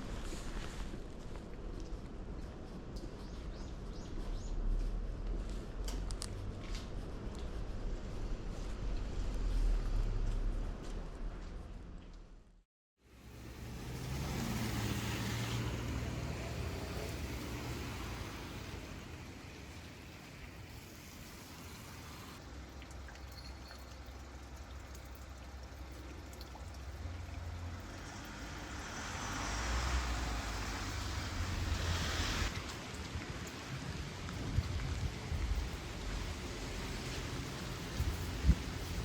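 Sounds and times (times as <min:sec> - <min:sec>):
rain falling: 0:13.2 - 0:39.0
water trickling: 0:13.3 - 0:38.9.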